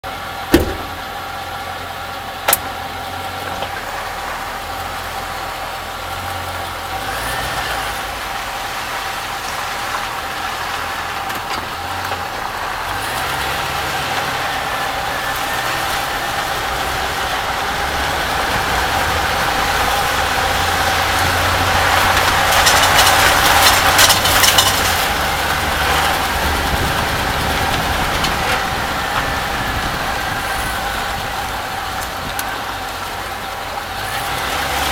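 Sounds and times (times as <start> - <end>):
metallic rattling under truck: 0.0 - 5.0, 9.3 - 34.1
pickup truck engine running: 0.0 - 34.9.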